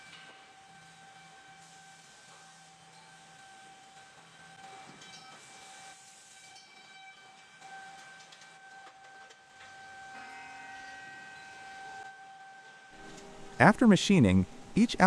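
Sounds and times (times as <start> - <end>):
hiss: 5.3 - 6.7
woodworking machinery whine: 7.2 - 13.8
low machine tone: 9.7 - 15.0.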